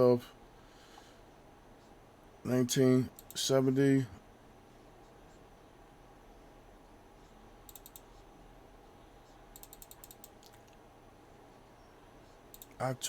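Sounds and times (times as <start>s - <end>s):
computer mouse clicks: 3.1s - 3.4s, 7.7s - 8.1s, 9.5s - 10.8s, 12.5s - 12.8s
scroll wheel ticking: 7.7s - 8.1s, 9.5s - 10.4s, 12.5s - 12.9s.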